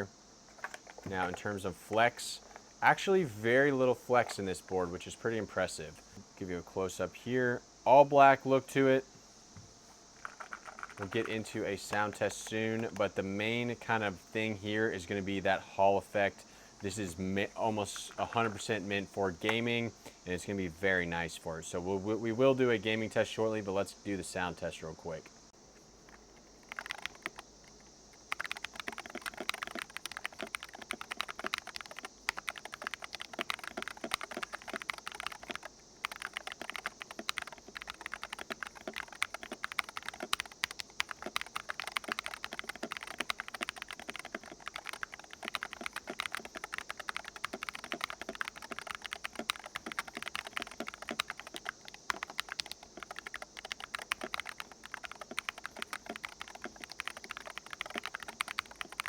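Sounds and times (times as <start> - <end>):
keyboard key clacks: 28.3 - 59.0.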